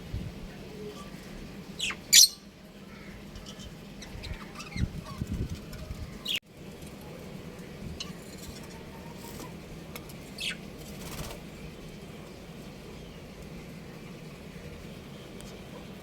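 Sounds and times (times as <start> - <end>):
low background hum: 0.0 - 16.0
budgerigar chirps: 1.8 - 2.4.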